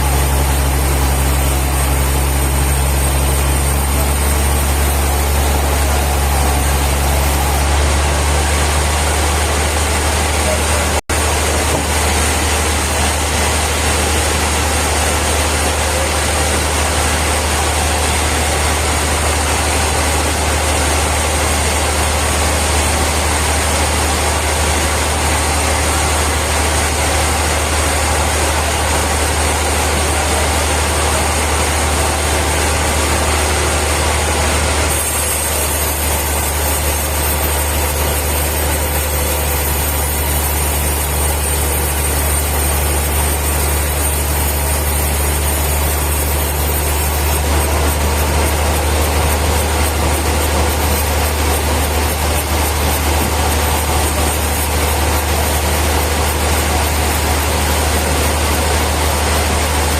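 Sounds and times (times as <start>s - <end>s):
sawmill machinery humming: 0.0s - 59.9s.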